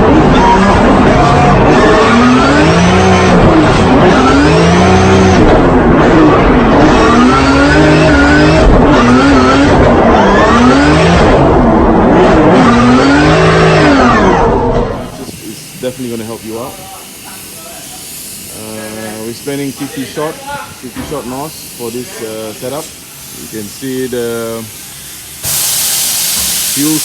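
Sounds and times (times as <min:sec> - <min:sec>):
tyre squeal: 0:00.0 - 0:03.1
car engine revving: 0:00.0 - 0:16.7.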